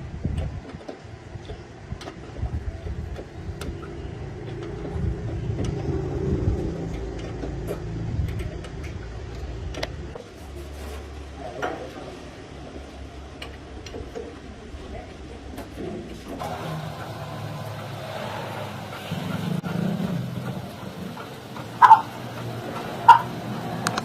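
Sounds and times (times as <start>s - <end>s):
truck engine rumbling: 1.1s - 10.3s, 15.8s - 24.0s.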